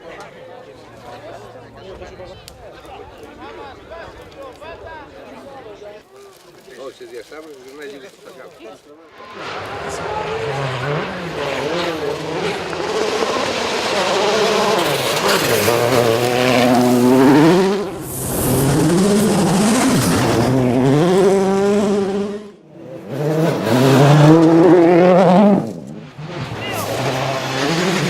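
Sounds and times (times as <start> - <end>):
car engine revving: 9.2 - 28.0.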